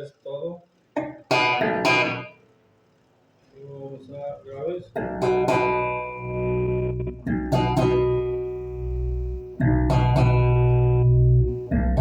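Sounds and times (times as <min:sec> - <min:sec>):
electric bass plucked notes: 0:01.0 - 0:02.4, 0:05.0 - 0:12.0.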